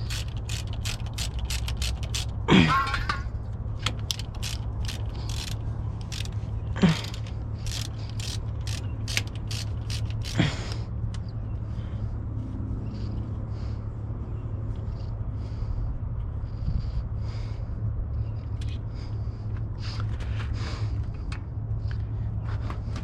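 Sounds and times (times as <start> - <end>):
ratchet wrench clicking: 0.0 - 2.5, 3.8 - 10.8
creaks: 3.8 - 10.4.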